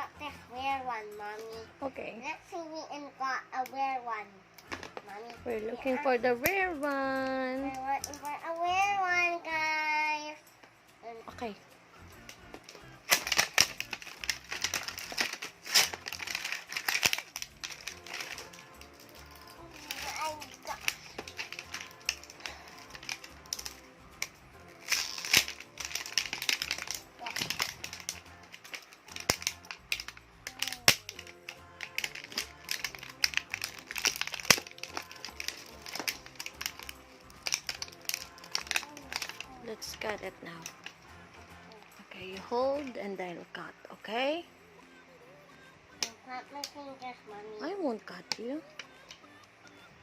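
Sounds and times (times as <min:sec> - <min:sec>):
background music: 0:00.0 - 0:50.0
plastic packaging crinkling: 0:12.7 - 0:41.0.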